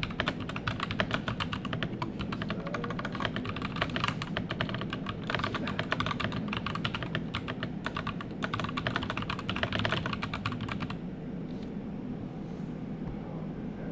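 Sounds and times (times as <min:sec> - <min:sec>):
keyboard typing: 0:00.0 - 0:11.0
low background noise: 0:00.0 - 0:13.9.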